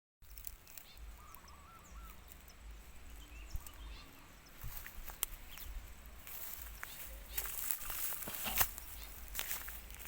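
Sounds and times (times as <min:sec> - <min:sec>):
small birds chirping: 0:00.2 - 0:10.0.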